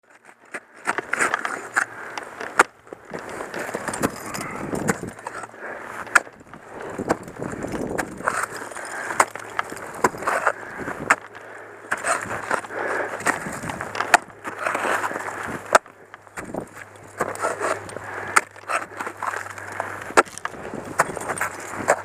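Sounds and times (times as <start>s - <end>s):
scraping and crunching ice: 0.1s - 22.0s
ice tools striking ice: 7.0s - 11.3s, 16.4s - 22.0s.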